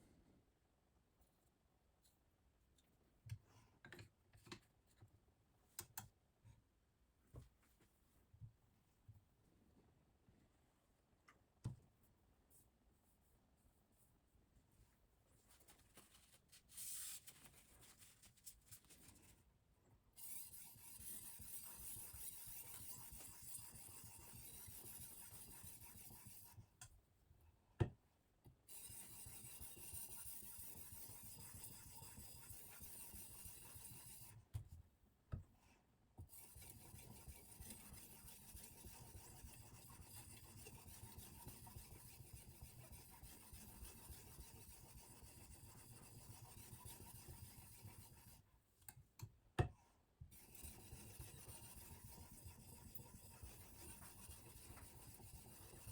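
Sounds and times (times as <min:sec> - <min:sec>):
sharpening stone rasping on knife: 0:20.2 - 0:26.5, 0:28.7 - 0:34.3, 0:36.3 - 0:48.4, 0:50.4 - 0:55.9.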